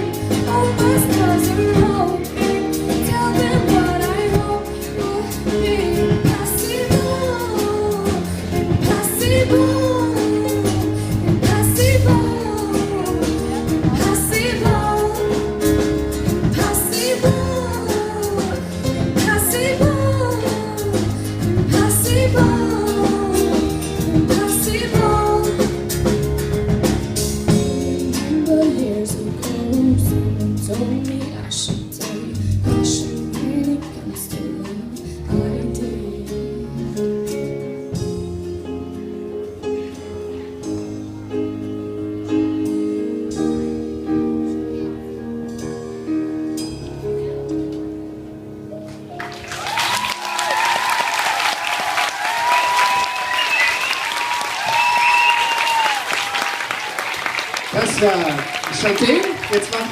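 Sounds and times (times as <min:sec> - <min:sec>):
drum kit beat: 0:00.0 - 0:35.8, 0:49.2 - 0:59.9
bass notes: 0:00.0 - 0:49.4
guitar: 0:00.0 - 0:59.9.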